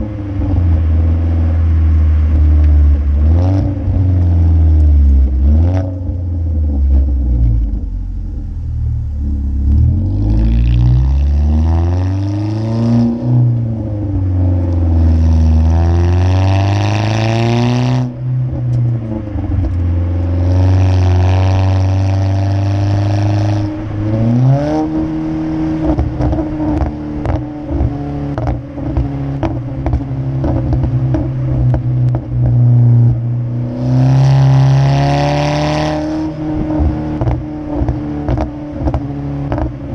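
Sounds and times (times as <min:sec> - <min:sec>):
exhaust crackles and pops: 0:00.0 - 0:34.8, 0:36.0 - 0:39.9
car engine revving: 0:00.0 - 0:39.9.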